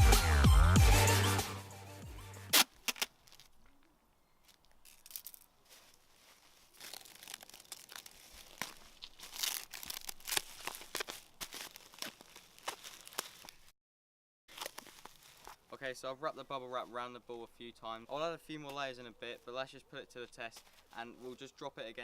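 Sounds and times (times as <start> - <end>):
bubble wrap snaps: 2.5 - 3.6, 6.7 - 13.7, 14.5 - 15.6
bubble wrap crinkling: 2.5 - 13.7, 14.5 - 15.7.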